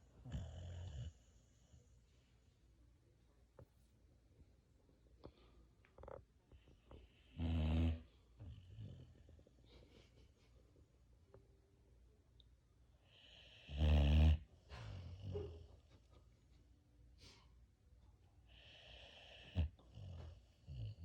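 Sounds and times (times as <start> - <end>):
dog snoring: 0.2 - 1.5, 7.1 - 9.3, 13.1 - 15.4, 18.5 - 21.0.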